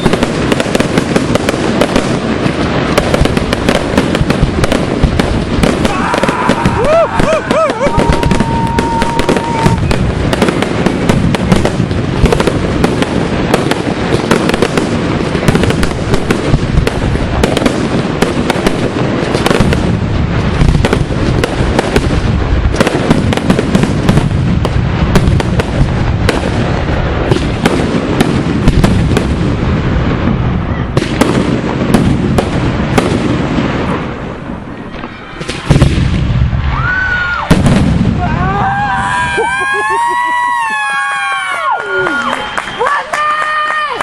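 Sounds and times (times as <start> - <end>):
firework whistle: 0.0 - 0.6, 5.6 - 11.8, 34.6 - 44.0
fireworks bursts and crackle: 0.0 - 44.0.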